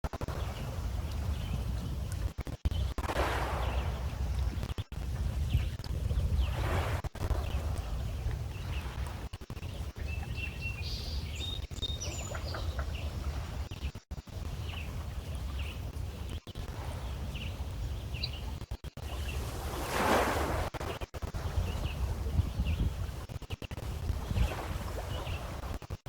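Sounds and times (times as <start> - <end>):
water splashing: 0.0 - 10.5, 19.0 - 22.4
birds chirping: 0.0 - 19.8, 21.4 - 23.1, 23.7 - 25.7
waves lapping against stones: 0.0 - 26.0
wind on microphone: 0.0 - 26.0.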